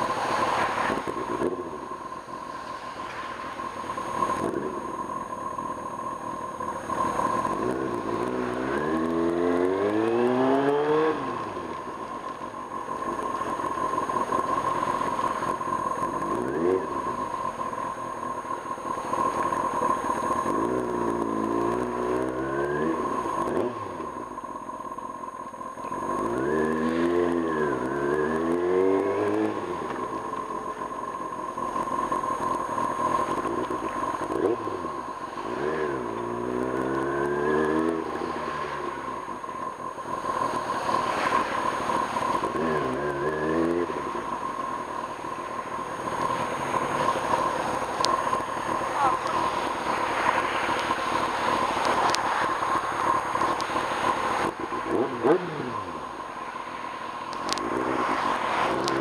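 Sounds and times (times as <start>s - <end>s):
constant high whine: 0.0s - 59.0s
motorcycle engine revving: 0.0s - 59.0s.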